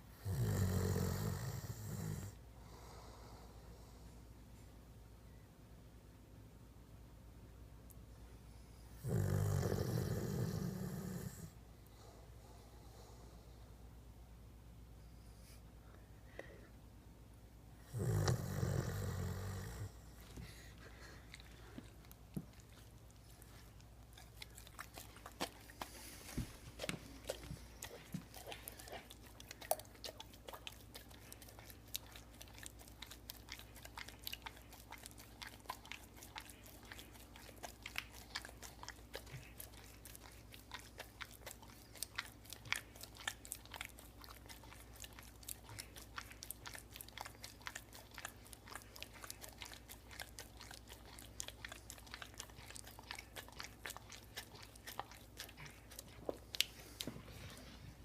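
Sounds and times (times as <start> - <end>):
dog snoring: 0.2 - 2.4, 9.0 - 11.5, 17.9 - 20.0.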